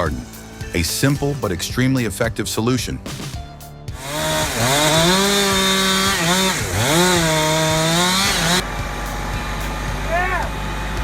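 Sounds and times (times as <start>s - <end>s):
small engine running at high revs: 3.9s - 11.0s.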